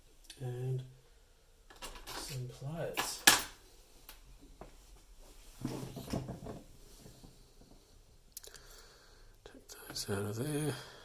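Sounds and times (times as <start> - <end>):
tools handling and rattling: 1.7 - 3.6.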